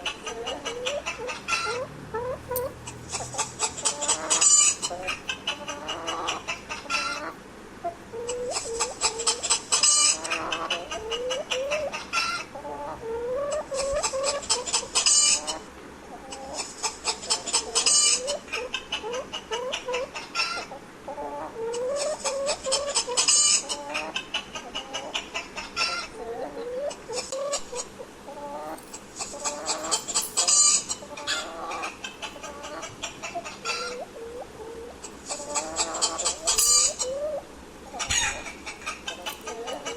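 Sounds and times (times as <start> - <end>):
hens clucking: 0.0 - 39.9
rapid hen chattering calls: 0.0 - 39.9.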